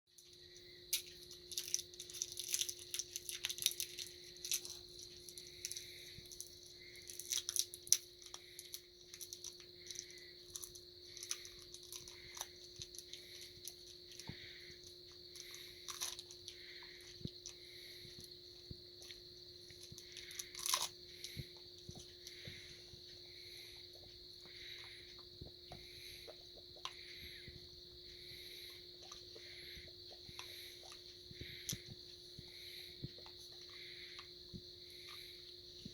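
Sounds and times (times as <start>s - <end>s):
dog crunching hard candy: 0.9s - 17.6s, 19.0s - 22.4s.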